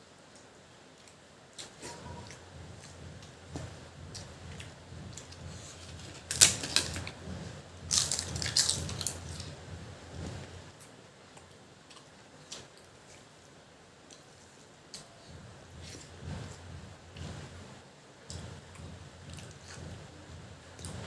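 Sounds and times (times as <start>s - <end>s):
papad cracking and crunching: 6.2s - 7.1s, 7.9s - 9.5s.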